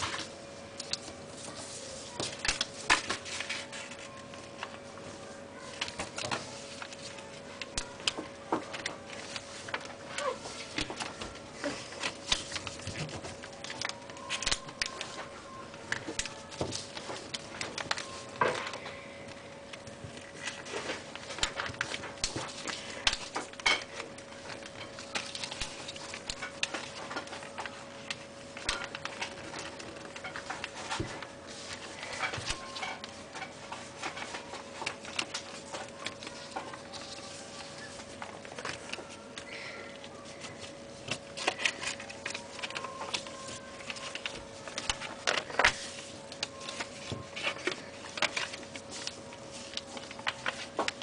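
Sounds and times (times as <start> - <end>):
faint steady hum: 0.0 - 51.0.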